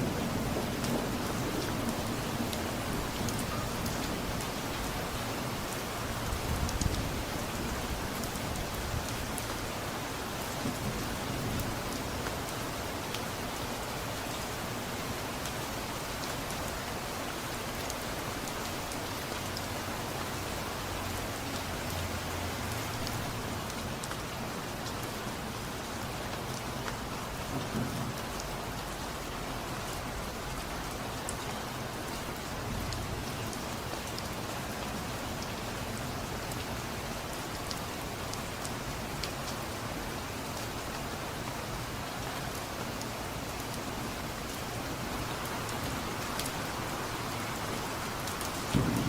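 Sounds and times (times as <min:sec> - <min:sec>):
steady rain: 0:00.0 - 0:49.0
distant thunder rumble: 0:48.6 - 0:49.0.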